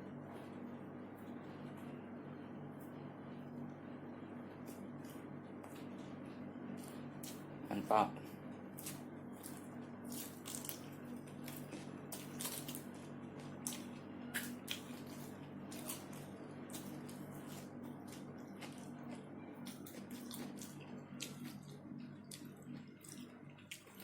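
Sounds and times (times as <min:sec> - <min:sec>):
steady low hum: 0:00.0 - 0:24.0
chewing: 0:08.8 - 0:24.0.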